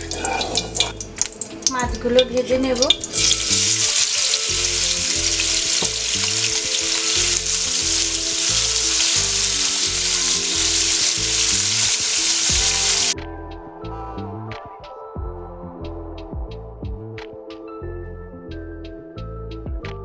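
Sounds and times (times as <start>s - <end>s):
fish sizzling in hot oil: 0.0s - 1.8s, 2.8s - 13.2s.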